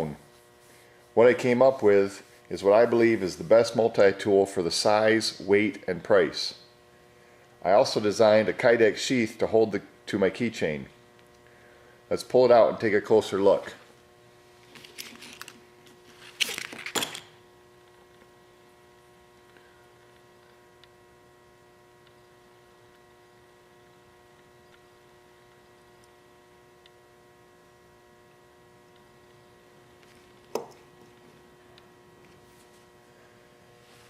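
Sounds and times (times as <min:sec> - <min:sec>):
faint electrical hum: 0:00.0 - 0:34.0
rustling and clicking handling noise: 0:14.6 - 0:17.3.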